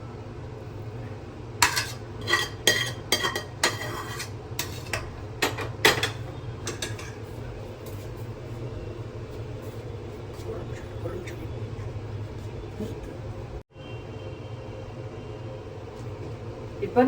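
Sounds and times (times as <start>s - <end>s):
spoon clinking against metal pot: 1.6s - 7.2s.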